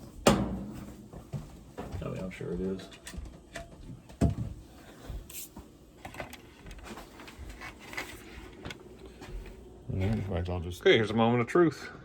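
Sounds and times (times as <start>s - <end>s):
clicks and knocks of parts handled: 6.0s - 9.6s.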